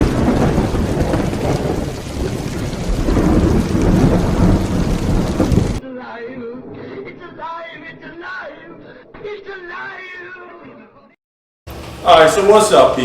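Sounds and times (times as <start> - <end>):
dense rushing and rumbling noise: 0.0 - 5.8.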